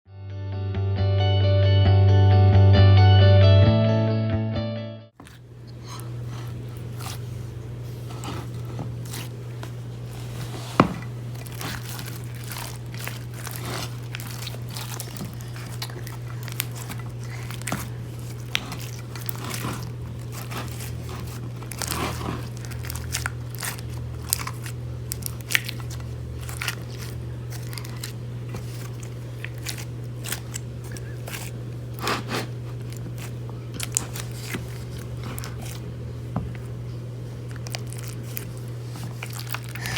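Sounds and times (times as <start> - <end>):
steady low hum: 5.1 - 39.9
slime squishing and popping: 11.3 - 35.8.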